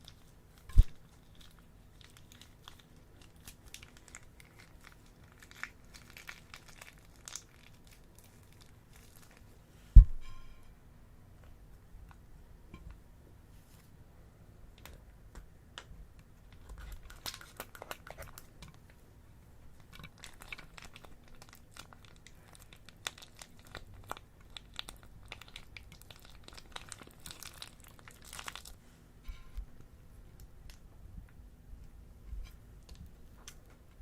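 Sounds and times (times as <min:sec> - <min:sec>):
plastic bags crinkling: 0:00.0 - 0:09.5, 0:19.8 - 0:28.8.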